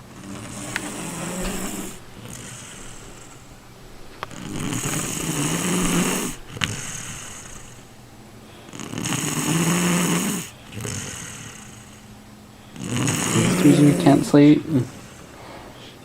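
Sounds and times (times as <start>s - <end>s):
quiet breathing: 0.0s - 16.0s
person snoring: 0.1s - 3.4s, 4.3s - 7.9s, 8.7s - 12.0s, 12.8s - 16.0s.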